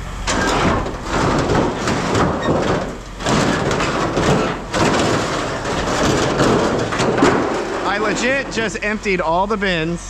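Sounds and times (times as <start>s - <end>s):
scrap metal clattering and scraping: 0.2s - 9.2s.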